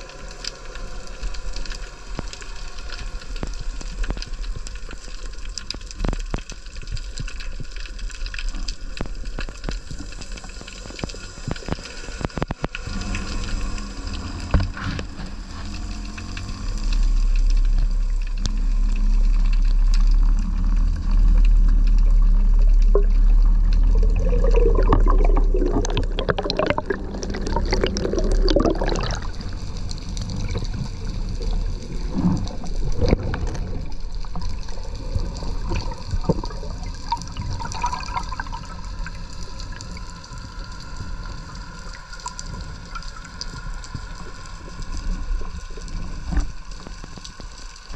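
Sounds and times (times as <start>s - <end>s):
water sloshing and bubbling: 0.0s - 47.9s
steady low rumble: 12.8s - 47.9s
water splashing: 17.4s - 39.0s.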